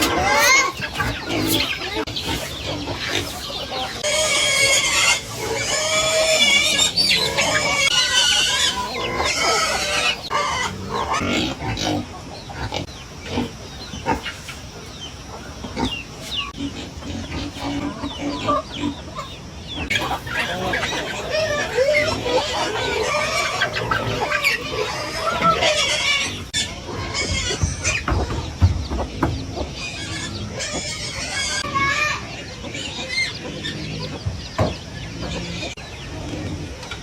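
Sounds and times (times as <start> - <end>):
chickens clucking: 0.0 - 37.0
farm animal noises: 0.0 - 37.0.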